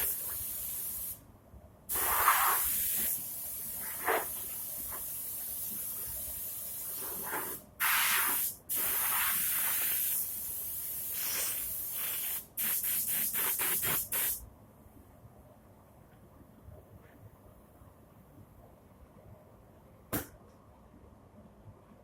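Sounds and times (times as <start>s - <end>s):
hissing spray of gas: 1.9s - 14.4s.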